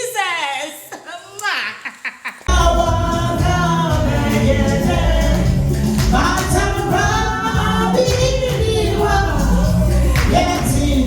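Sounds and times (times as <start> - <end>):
gospel voices singing: 2.4 - 11.0
band with steady bass line: 2.5 - 11.0.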